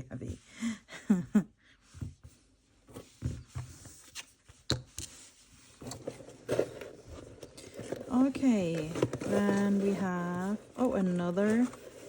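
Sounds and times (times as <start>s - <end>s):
items clicking and tapping: 5.8s - 12.0s.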